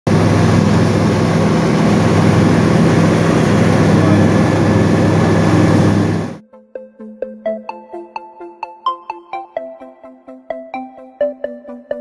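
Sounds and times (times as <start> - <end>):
jet engines and airflow rushing: 0.0 - 6.4
low even hum: 0.1 - 6.4.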